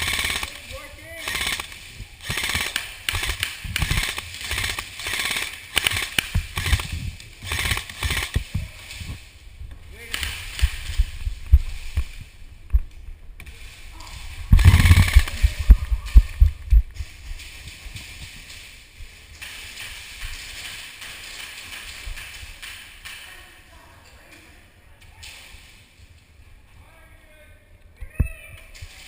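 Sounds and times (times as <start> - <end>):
airsoft guns firing: 0.0 - 9.1, 10.0 - 12.1, 13.4 - 16.5, 19.4 - 23.3
low rumble on microphone: 8.4 - 19.2.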